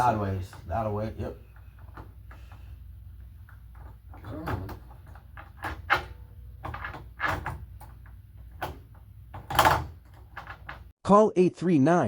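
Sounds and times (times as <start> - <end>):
door hardware clicks and knocks: 3.5 - 10.9.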